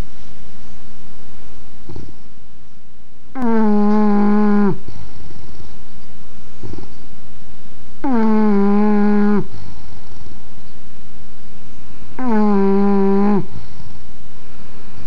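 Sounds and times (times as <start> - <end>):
dog snoring: 3.4 - 5.0, 8.0 - 9.7, 12.2 - 13.7.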